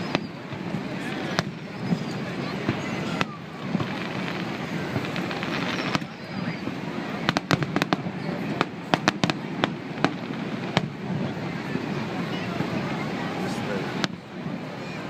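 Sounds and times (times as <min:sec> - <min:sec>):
fireworks popping and banging: 0:00.0 - 0:14.9
background rush: 0:00.0 - 0:15.0.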